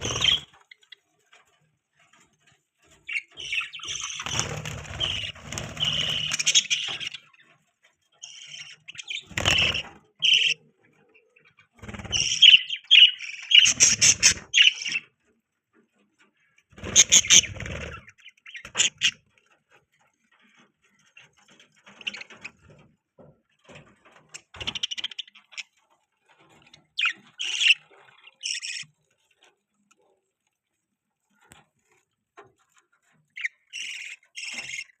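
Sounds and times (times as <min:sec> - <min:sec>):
budgerigars chirping: 0:00.0 - 0:01.0, 0:03.0 - 0:07.4, 0:08.2 - 0:10.6, 0:11.8 - 0:15.1, 0:16.8 - 0:19.2, 0:24.3 - 0:25.7, 0:26.7 - 0:28.9, 0:33.3 - 0:35.0.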